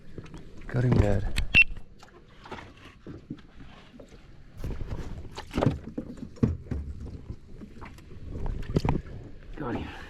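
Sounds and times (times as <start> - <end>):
water splashing: 4.4 - 9.3
knocks and rattles in metal boat: 4.6 - 7.4.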